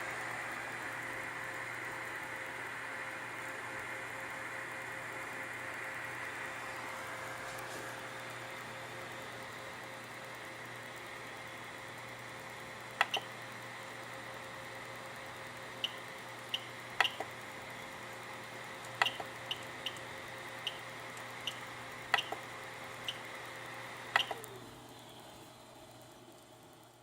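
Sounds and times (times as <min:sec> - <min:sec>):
sharp clicks: 0:13.0 - 0:13.3, 0:15.8 - 0:17.5, 0:18.8 - 0:23.3, 0:24.1 - 0:24.6.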